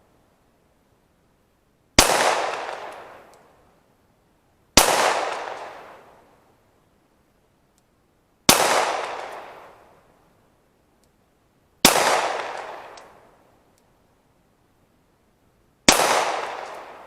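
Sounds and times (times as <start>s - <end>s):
pistol shots with echo: 2.0s - 3.1s, 4.8s - 5.9s, 8.5s - 9.7s, 11.8s - 13.0s, 15.9s - 17.0s.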